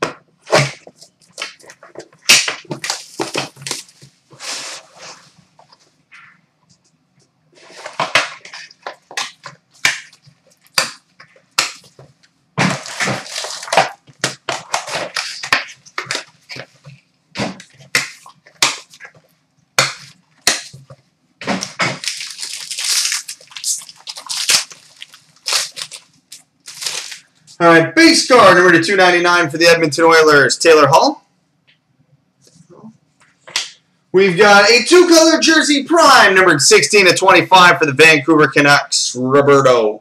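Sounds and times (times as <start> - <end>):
packaging being torn and crinkled: 12.7 - 16.2, 21.9 - 27.3.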